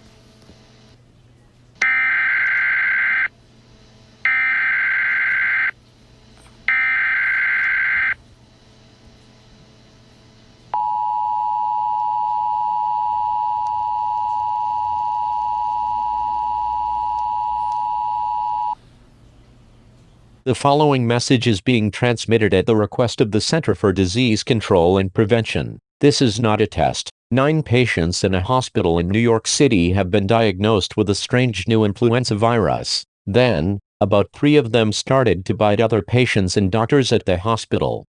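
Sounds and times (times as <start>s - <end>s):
buzzy digital data tones: 4.3s - 8.2s
two-tone attention signal: 6.7s - 8.2s.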